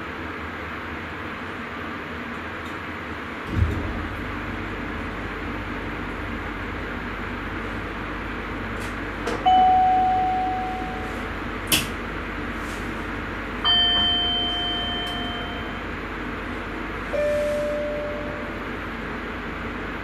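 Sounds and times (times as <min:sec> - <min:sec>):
train running noise: 0:00.5 - 0:20.0
bell-like chimes: 0:13.7 - 0:15.9.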